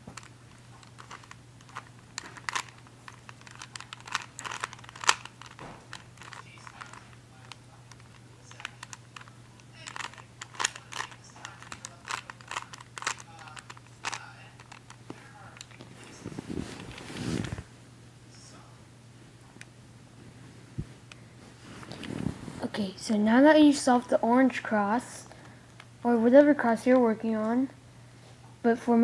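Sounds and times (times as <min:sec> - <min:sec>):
plastic puzzle cube clicking: 0:00.8 - 0:14.9.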